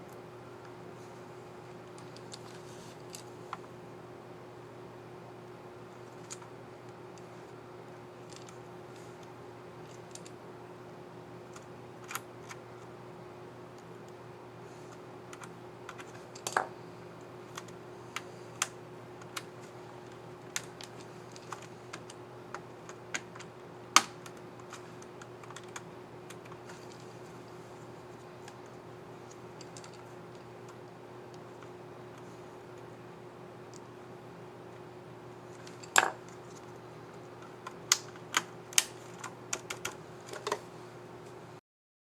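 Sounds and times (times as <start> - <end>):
steady low hum: 0.0 - 41.6.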